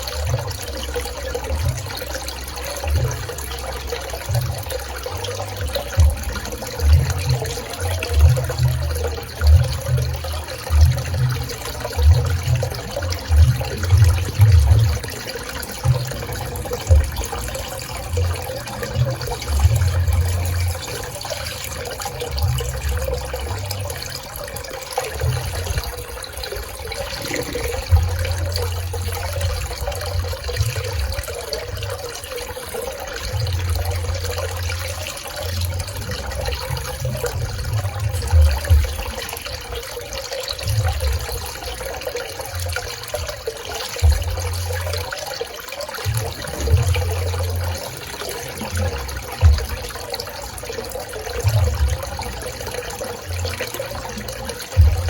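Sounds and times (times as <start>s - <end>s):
pool water splashing and trickling: 0.0s - 55.0s
low rumbles: 25.2s - 32.1s.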